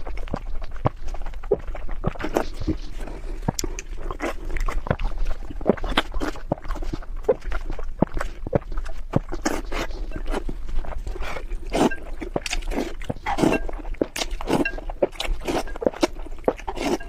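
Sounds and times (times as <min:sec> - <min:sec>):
cat chewing and smacking: 0:00.0 - 0:17.0.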